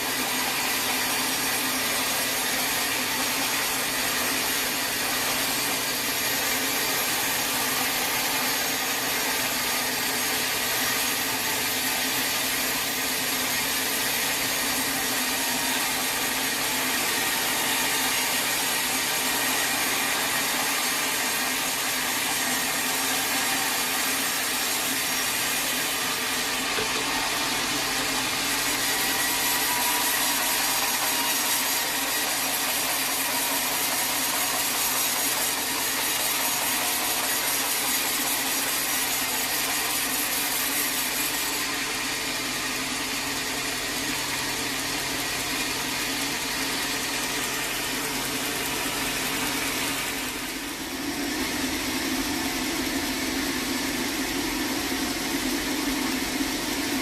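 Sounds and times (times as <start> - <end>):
saw cutting through wood: 0.0 - 57.0.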